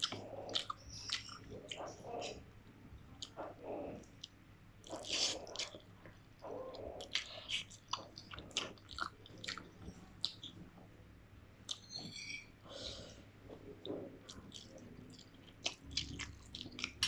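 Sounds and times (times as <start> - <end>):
person chewing noodles: 0.0 - 2.4, 3.2 - 3.4, 4.0 - 5.9, 6.7 - 10.6, 13.6 - 17.0.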